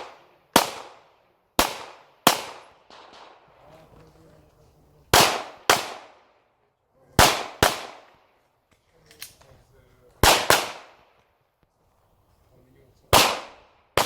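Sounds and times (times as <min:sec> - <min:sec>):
pistol shots echoing: 0:00.0 - 0:03.6, 0:05.1 - 0:06.4, 0:07.2 - 0:08.3, 0:10.2 - 0:11.1, 0:13.1 - 0:14.0.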